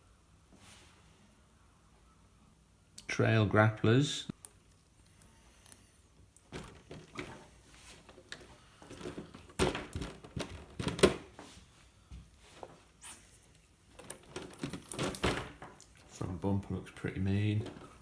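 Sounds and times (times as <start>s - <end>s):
handling knocks taps and rustles: 6.4s - 18.0s.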